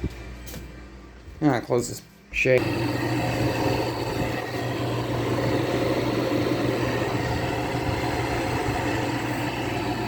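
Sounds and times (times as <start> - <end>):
electric motor hum: 2.6 - 10.0.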